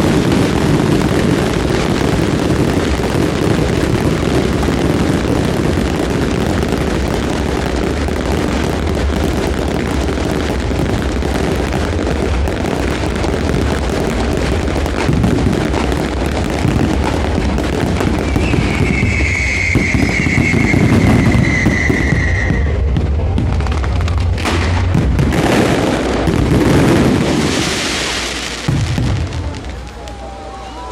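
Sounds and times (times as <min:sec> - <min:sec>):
fireworks crackling and booming: 0:00.0 - 0:30.9
falling high whistle: 0:18.2 - 0:22.8.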